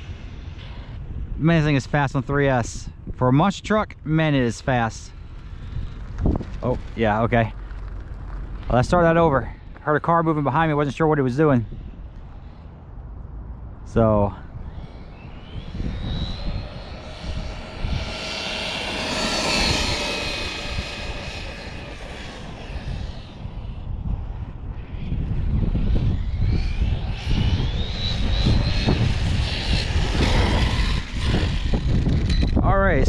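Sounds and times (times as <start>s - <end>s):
wind rumble on microphone: 0.0s - 33.0s
electric motor whining: 14.5s - 24.0s, 25.5s - 32.6s.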